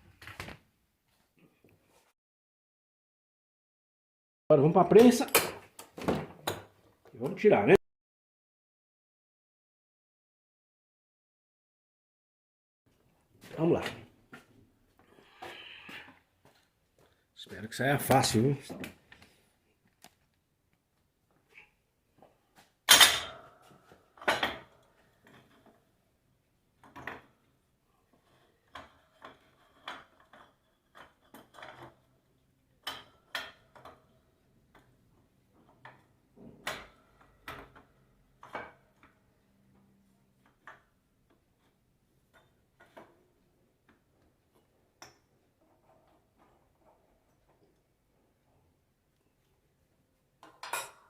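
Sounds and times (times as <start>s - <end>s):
metal parts and tools clanking: 22.9s - 25.7s.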